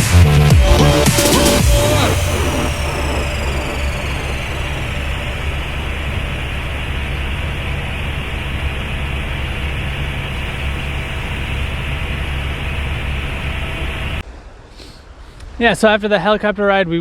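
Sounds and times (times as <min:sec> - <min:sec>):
helicopter cabin drone: 0:00.0 - 0:14.2.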